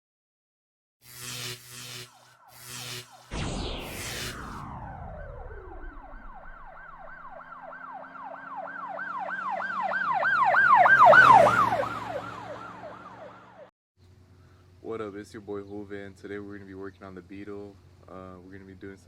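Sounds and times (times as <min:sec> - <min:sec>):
siren yelping: 0:02.1 - 0:13.7.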